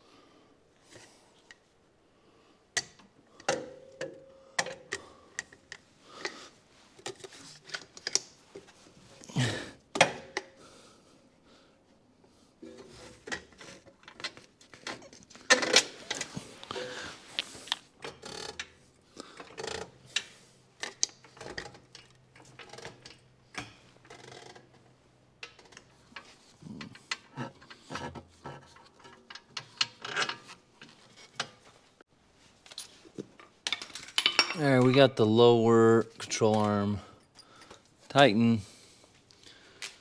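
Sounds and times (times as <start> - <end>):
hand tools clinking on metal: 33.7 - 35.2.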